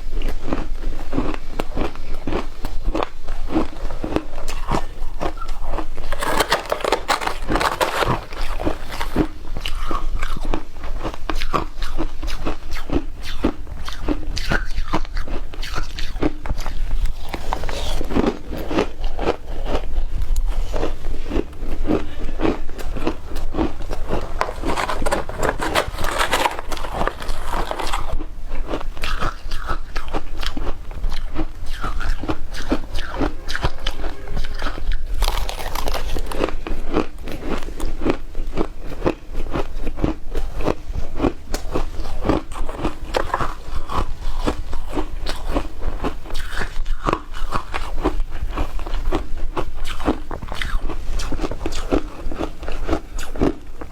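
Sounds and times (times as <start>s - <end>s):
crunching ice: 1.2s - 19.8s, 20.8s - 38.7s, 40.6s - 49.0s.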